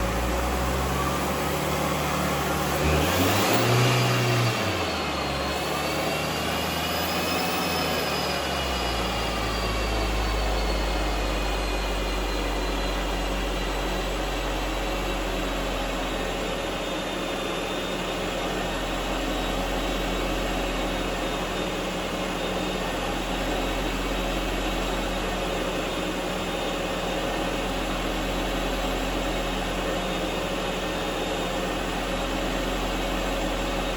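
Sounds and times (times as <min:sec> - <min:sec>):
diesel engine and turbo whine: 0:00.0 - 0:33.9
low drone and whir: 0:00.0 - 0:33.9.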